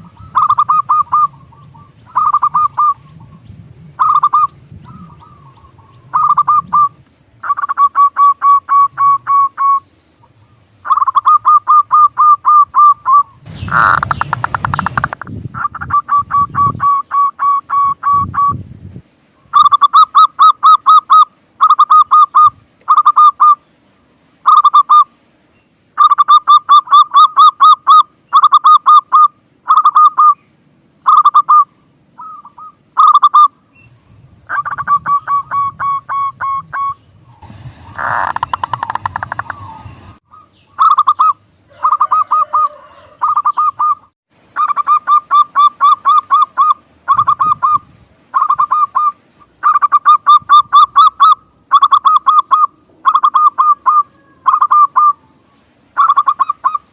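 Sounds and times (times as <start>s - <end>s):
dove cooing: 0.0s - 18.6s, 34.5s - 37.0s, 37.9s - 55.4s.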